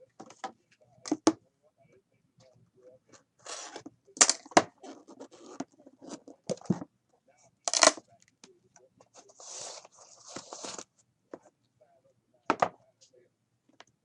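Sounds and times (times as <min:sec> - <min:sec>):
cardboard and cards clicking: 0:04.2 - 0:04.7, 0:07.7 - 0:08.0.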